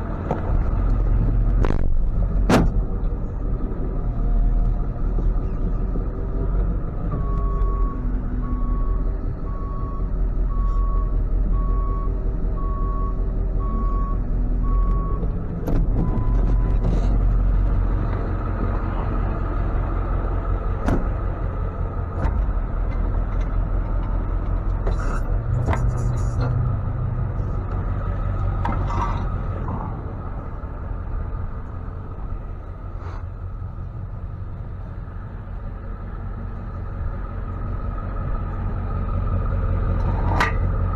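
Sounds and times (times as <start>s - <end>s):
truck engine running: 0.0s - 40.9s
truck reverse alarm beeping: 7.2s - 15.3s, 16.0s - 16.8s.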